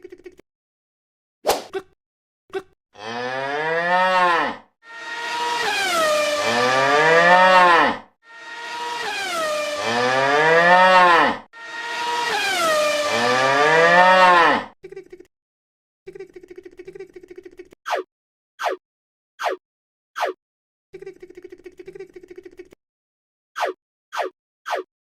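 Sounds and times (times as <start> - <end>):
cow mooing: 3.0 - 14.8.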